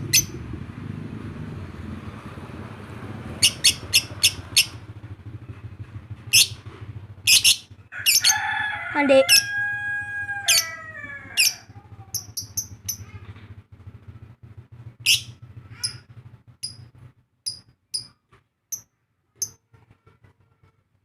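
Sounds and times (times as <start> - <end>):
bird chirping: 3.4 - 4.8, 7.3 - 7.7, 12.2 - 13.0, 15.0 - 16.0, 16.6 - 16.9, 17.5 - 18.1.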